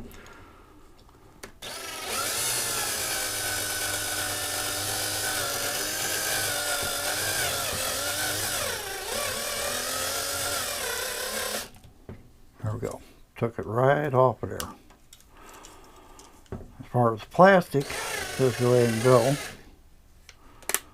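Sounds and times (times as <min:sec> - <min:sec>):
electric drill whining: 0:01.6 - 0:11.8, 0:17.8 - 0:19.6.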